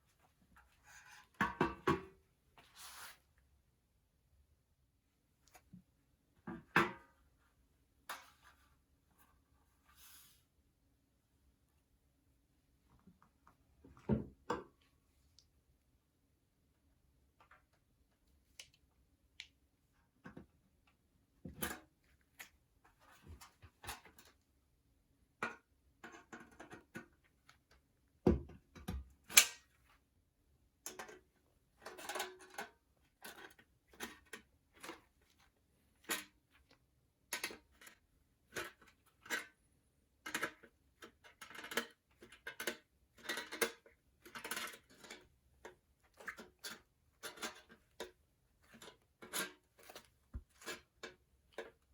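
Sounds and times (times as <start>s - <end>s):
metal trays clicking and tapping: 40.2s - 51.8s.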